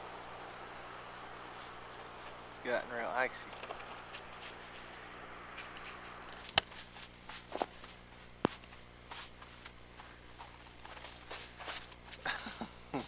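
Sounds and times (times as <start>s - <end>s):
faint steady hum: 0.0s - 13.0s
footsteps crunching on icy snow: 3.7s - 12.2s.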